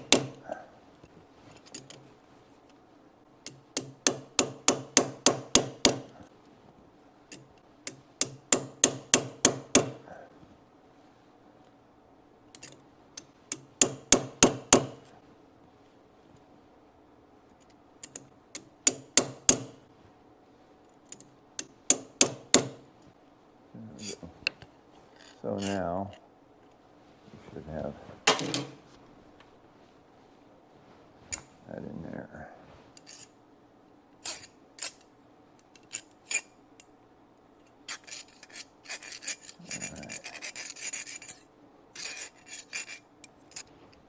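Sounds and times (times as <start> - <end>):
hammer tapping metal rod: 0.0 - 0.4, 3.5 - 6.1, 7.3 - 10.0, 13.5 - 15.0, 18.0 - 19.8, 21.6 - 22.8
metallic clicks and scrapes: 1.5 - 2.8, 12.5 - 13.7, 17.6 - 19.6, 24.0 - 26.2, 32.9 - 33.4, 34.2 - 36.9, 37.6 - 44.0.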